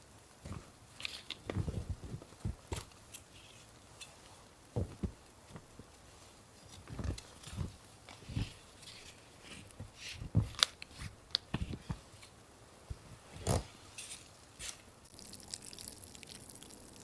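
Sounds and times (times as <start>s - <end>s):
soft thuds and knocks: 4.8s - 5.9s, 9.7s - 10.6s.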